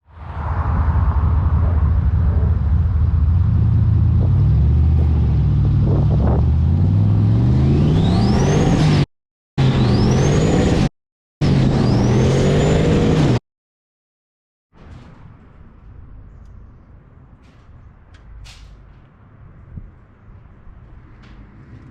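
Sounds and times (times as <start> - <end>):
car engine accelerating: 0.2 - 13.4.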